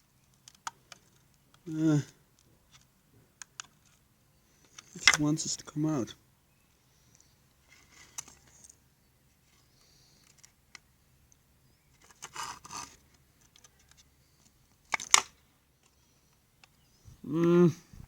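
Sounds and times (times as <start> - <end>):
small tools scraping plastic: 11.9 - 16.2.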